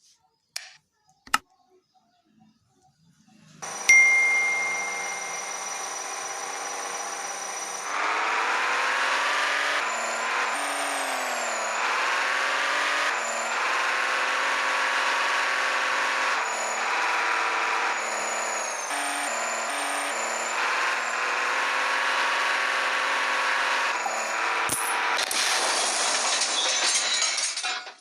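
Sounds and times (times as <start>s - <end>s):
toy electric motor whirring: 4.6s - 25.7s.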